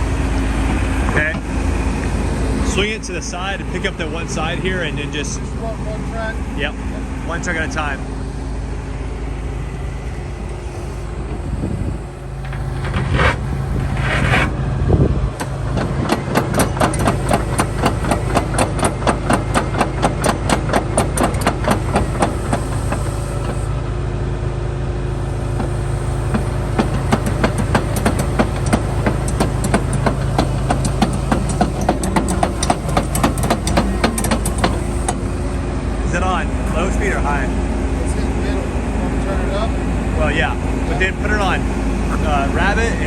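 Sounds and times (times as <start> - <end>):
excavator diesel engine running: 0.0 - 43.0
hydraulic and metal noises: 0.7 - 23.9, 25.0 - 38.4, 41.0 - 43.0
steel track links clanking: 15.4 - 23.7, 25.2 - 35.6.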